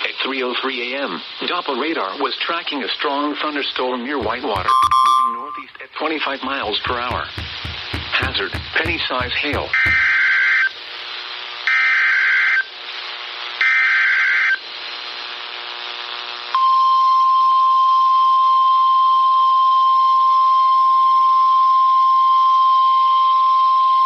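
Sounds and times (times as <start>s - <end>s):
steady alarm tone: 4.2s - 5.7s, 7.0s - 10.8s.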